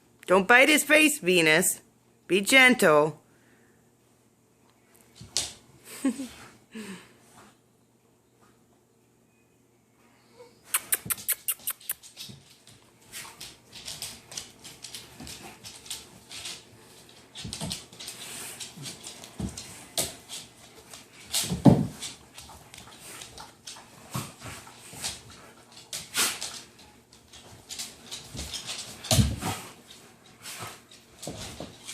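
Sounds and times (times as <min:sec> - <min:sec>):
puppies whimpering and scuffling: 0:10.2 - 0:31.9.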